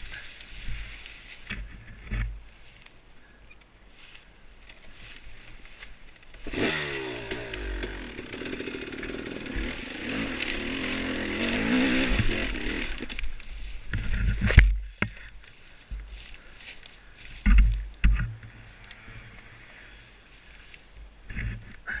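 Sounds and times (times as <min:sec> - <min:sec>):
dirt bike engine revving: 0:06.4 - 0:13.3.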